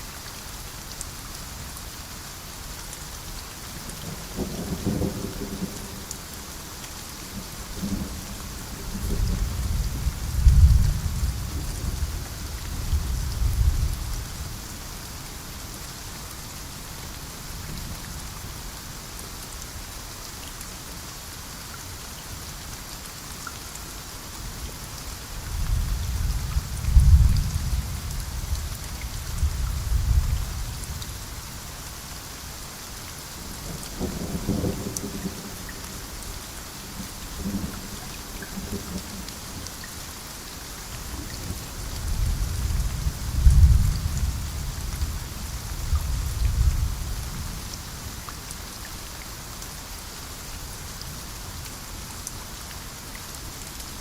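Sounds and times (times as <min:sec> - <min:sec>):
heavy rain hissing: 0:00.0 - 0:54.0
low thunder rumbling: 0:25.6 - 0:30.7, 0:41.5 - 0:47.6.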